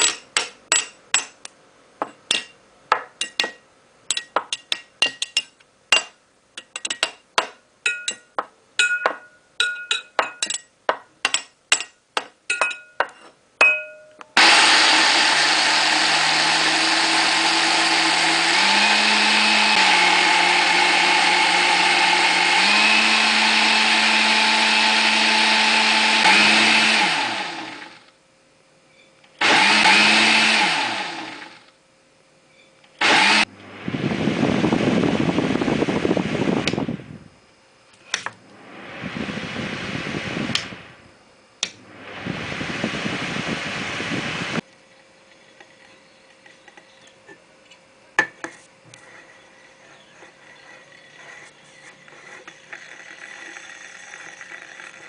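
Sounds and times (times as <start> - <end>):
small electric motor running: 48.9 - 55.0.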